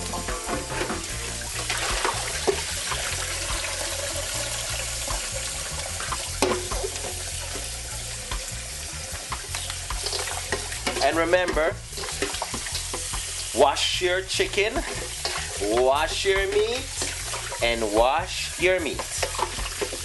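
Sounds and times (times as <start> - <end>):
tap water running: 0.0 - 20.0
knocks and splashes of chicken: 0.5 - 3.6.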